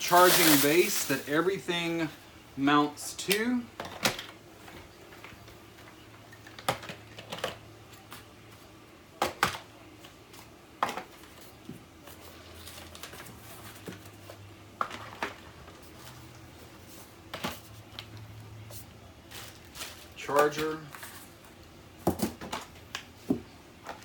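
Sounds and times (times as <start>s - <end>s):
plastic parts clicking and knocking: 6.5s - 7.6s.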